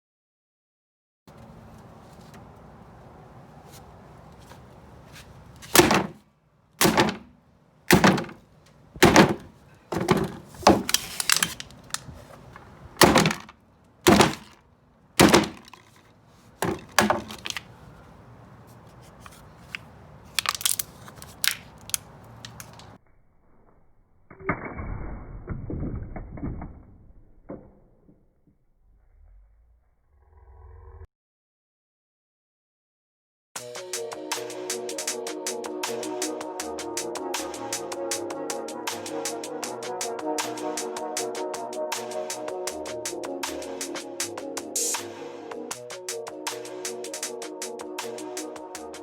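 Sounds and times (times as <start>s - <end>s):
hammer crushing cans: 5.7s - 6.2s, 6.8s - 7.3s, 7.9s - 8.4s, 9.0s - 12.1s, 13.0s - 13.5s, 14.1s - 14.6s, 15.2s - 16.0s, 16.6s - 17.7s.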